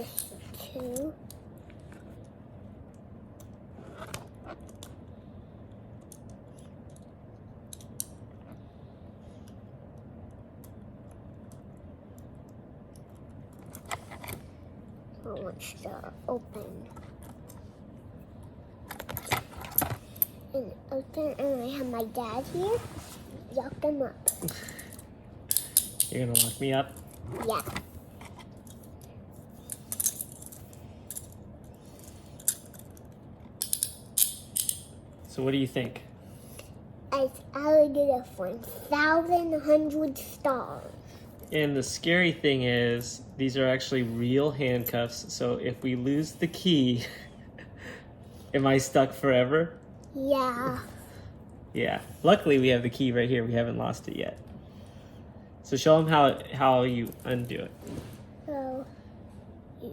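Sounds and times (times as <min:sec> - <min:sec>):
low background noise: 0:00.0 - 0:59.9
metal handcuffs clinking: 0:24.3 - 0:26.6, 0:33.6 - 0:34.9
handcuffs clicking: 0:33.6 - 0:34.8.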